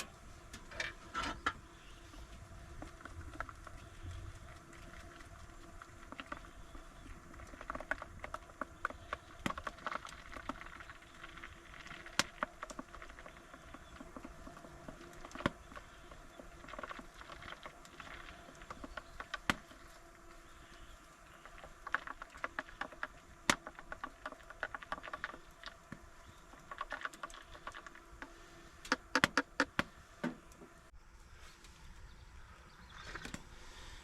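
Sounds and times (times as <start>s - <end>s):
water drips pattering: 2.7s - 28.3s.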